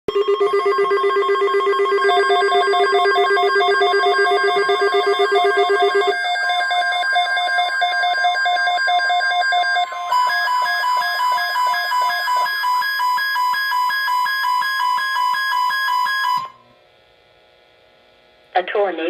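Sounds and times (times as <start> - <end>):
electronic alert trill: 0.1 - 12.8.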